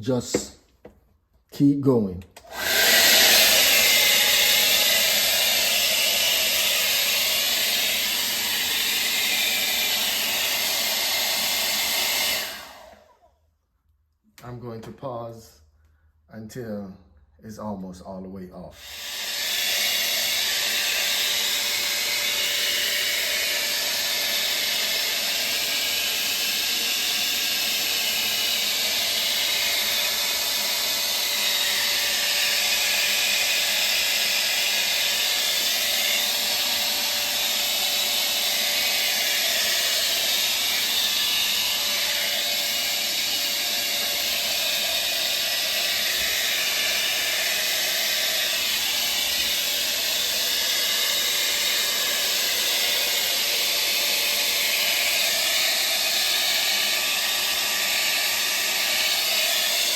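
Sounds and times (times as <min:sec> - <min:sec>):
hair dryer blowing: 0:00.0 - 0:01.0, 0:02.4 - 0:13.4, 0:18.8 - 0:59.9.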